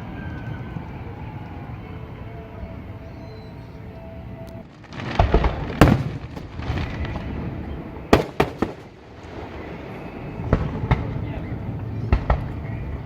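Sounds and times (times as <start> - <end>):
fireworks rumble and crackle: 0.0 - 13.0
fireworks bangs: 4.6 - 11.4, 12.0 - 12.7.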